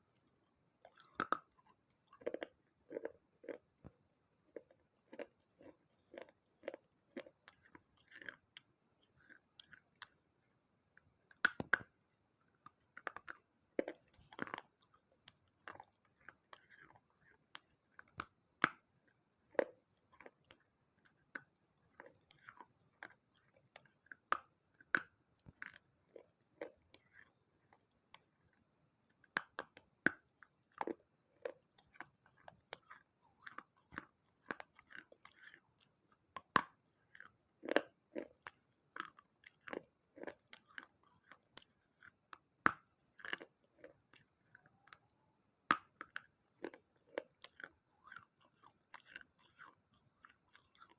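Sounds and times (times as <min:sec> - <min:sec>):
person crunching clay pot: 0:11.3 - 0:50.9.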